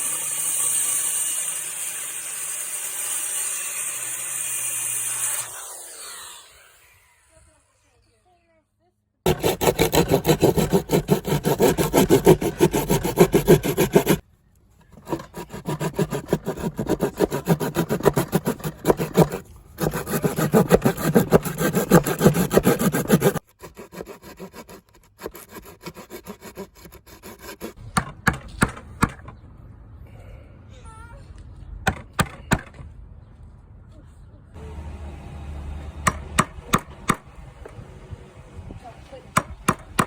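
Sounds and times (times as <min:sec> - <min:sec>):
hand saw cutting wood: 0:00.0 - 0:07.4, 0:09.3 - 0:14.2, 0:14.9 - 0:27.8.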